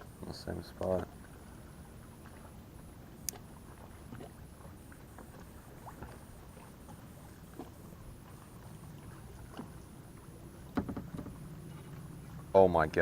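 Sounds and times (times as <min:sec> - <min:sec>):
wind and water rumble: 0:00.0 - 0:13.0
faint ticks: 0:03.2 - 0:03.5.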